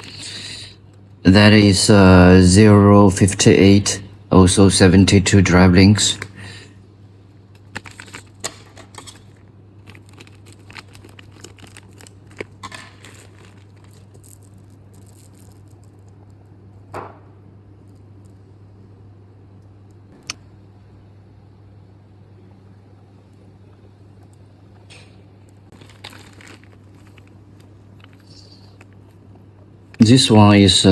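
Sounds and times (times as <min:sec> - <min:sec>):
steady low hum: 0:00.0 - 0:30.9
saw chain links clinking: 0:07.6 - 0:15.9.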